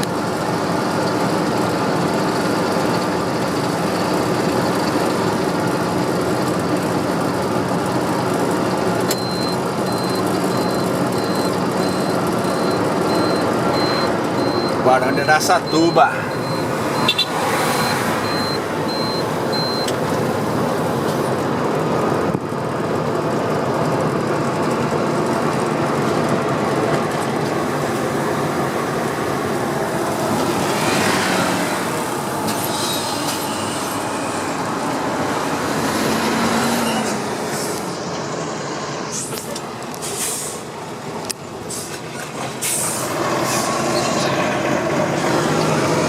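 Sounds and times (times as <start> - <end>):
truck diesel engine running: 0.0 - 46.0.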